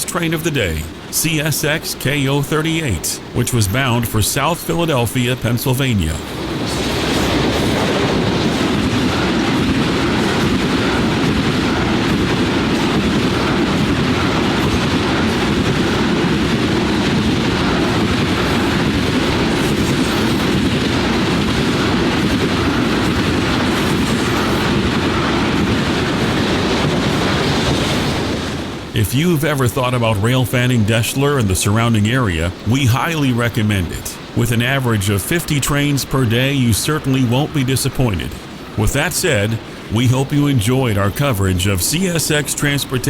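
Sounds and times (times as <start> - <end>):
train wheels clickety-clack: 6.1 - 31.4.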